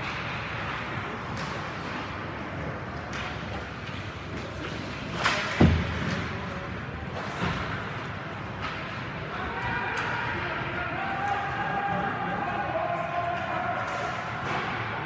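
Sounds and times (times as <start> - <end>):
murmur of voices: 4.2 - 15.0.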